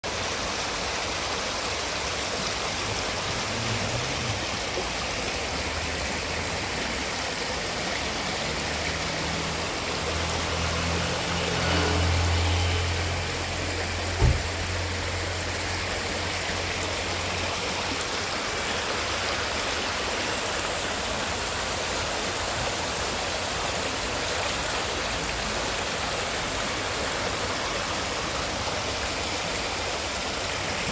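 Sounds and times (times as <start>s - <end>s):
rushing water: 0.0s - 30.9s.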